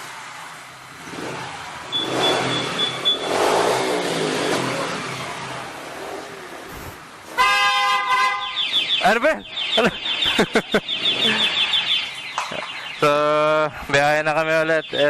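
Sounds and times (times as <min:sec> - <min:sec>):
motorcycle engines revving: 0:00.0 - 0:15.0
street traffic: 0:00.0 - 0:15.0
vehicle horn: 0:07.3 - 0:08.9.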